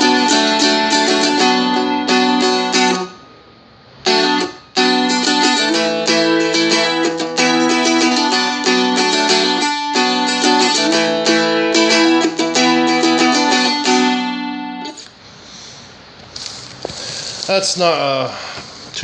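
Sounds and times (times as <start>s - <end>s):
strummed dulcimer chords: 0.0s - 3.2s, 4.1s - 15.0s.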